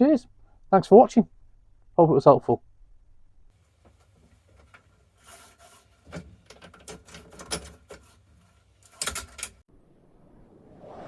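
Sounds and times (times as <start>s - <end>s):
light clicks and knocks: 3.6s - 9.6s.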